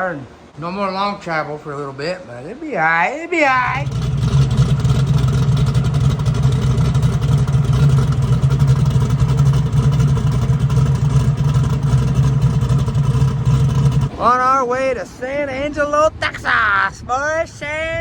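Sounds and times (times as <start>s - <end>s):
vehicle engine running: 3.5s - 14.9s.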